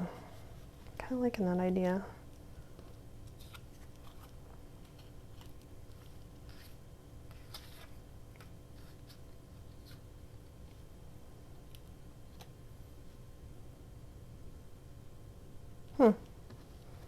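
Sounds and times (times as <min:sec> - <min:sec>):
paper rustling: 0:02.8 - 0:10.0.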